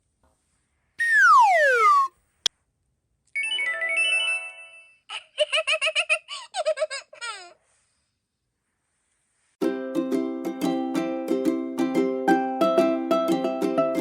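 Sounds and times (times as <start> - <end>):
falling whistle glide: 1.0 - 2.1.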